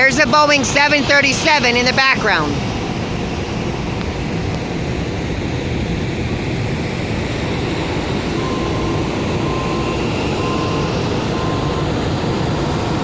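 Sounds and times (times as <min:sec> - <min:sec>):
jet aircraft noise with whine: 0:00.0 - 0:13.0
short faint beeps: 0:08.3 - 0:12.0.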